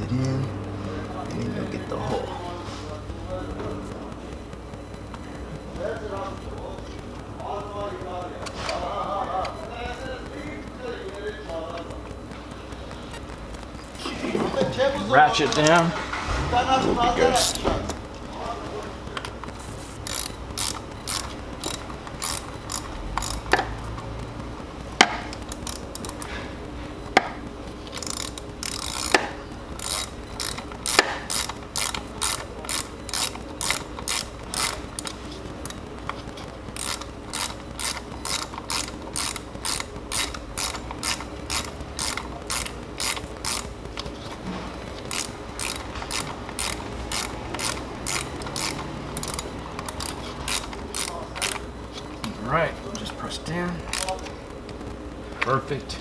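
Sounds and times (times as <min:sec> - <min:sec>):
socket ratchet clicking: 0:17.3 - 0:18.0, 0:19.1 - 0:26.3, 0:27.1 - 0:52.4, 0:53.8 - 0:54.3.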